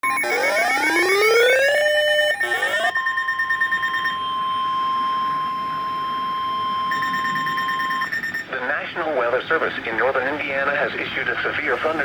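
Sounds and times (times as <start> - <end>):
siren-like pulsing tones: 0.0 - 8.5
steady alert tone: 0.0 - 8.5.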